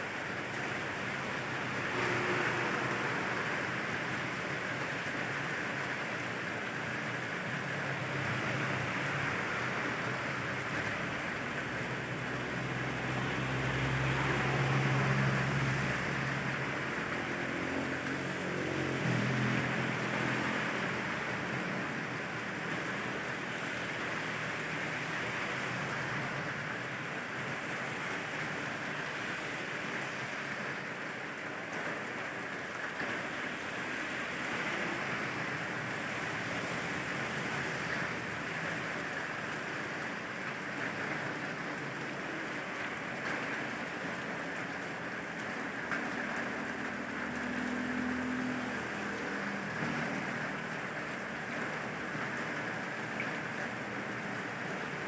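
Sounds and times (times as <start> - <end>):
steady rain: 0.0 - 55.0
traffic hum: 0.1 - 30.0.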